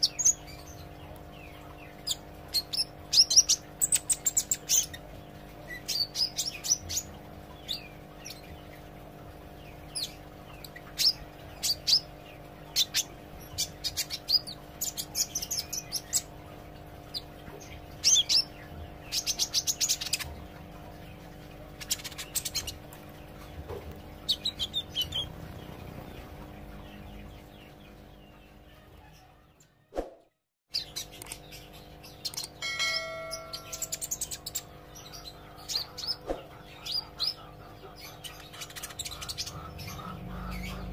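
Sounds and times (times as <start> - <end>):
bird twittering: 30.7 - 40.9.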